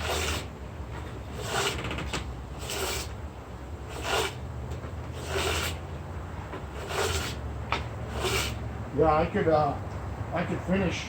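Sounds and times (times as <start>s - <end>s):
hand plane shaving wood: 0.0s - 0.5s, 1.3s - 3.2s, 3.9s - 4.4s, 5.1s - 5.9s, 6.6s - 7.4s, 8.0s - 8.6s.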